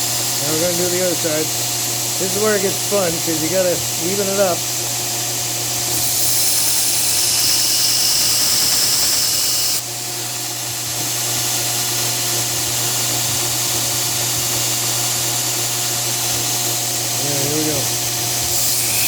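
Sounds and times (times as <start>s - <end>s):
belt grinder running: 0.0s - 4.9s, 5.5s - 9.8s, 13.6s - 19.0s
knife blade hissing on grinder belt: 5.8s - 9.8s, 17.2s - 19.0s.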